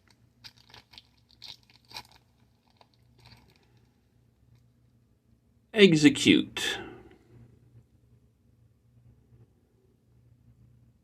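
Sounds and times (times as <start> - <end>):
faint clicks and crackles: 0.0 - 4.7
low steady hum: 0.0 - 11.0.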